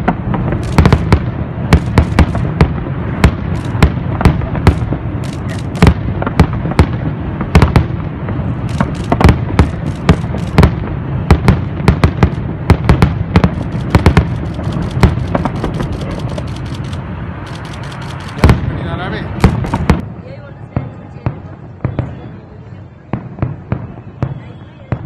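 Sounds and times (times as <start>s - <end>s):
fireworks cracking and banging: 0.0s - 25.0s
low rumble of explosions: 0.0s - 25.0s.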